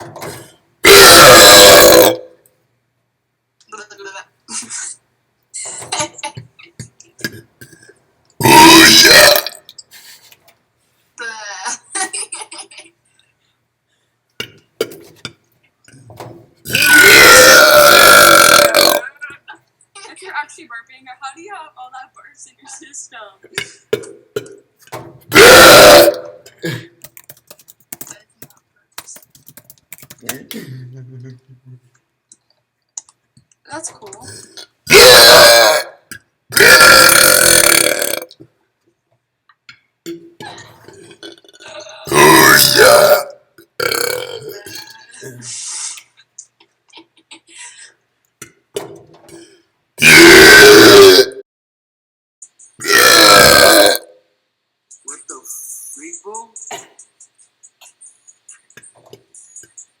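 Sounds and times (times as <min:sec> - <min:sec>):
long loud burp: 0:00.8 - 0:02.4, 0:08.4 - 0:09.6, 0:16.7 - 0:19.2, 0:25.3 - 0:26.4, 0:34.5 - 0:38.3, 0:40.9 - 0:44.9, 0:49.4 - 0:51.4, 0:52.8 - 0:54.2
sharp clicks: 0:27.0 - 0:30.4.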